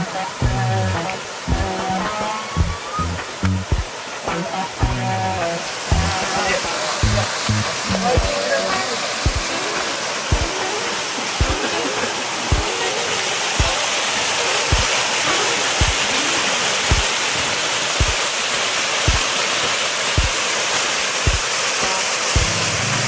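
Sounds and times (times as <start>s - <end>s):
waterfall rushing: 0.0s - 23.0s
music with slow thumping beat: 0.4s - 2.0s, 2.6s - 3.9s, 4.8s - 5.2s, 5.9s - 6.3s, 7.0s - 8.3s, 9.2s - 9.5s, 10.3s - 10.5s, 11.4s - 11.6s, 21.3s - 21.5s, 22.4s - 22.6s.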